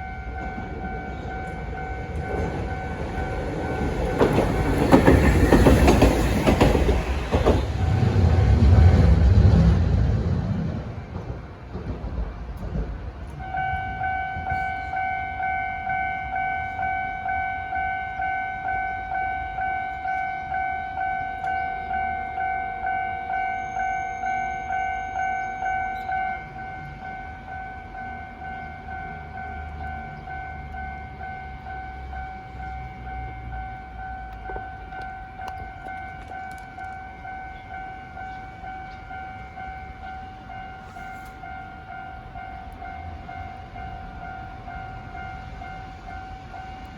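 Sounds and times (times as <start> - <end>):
level crossing warning bell: 0.0 - 9.0, 13.3 - 46.9.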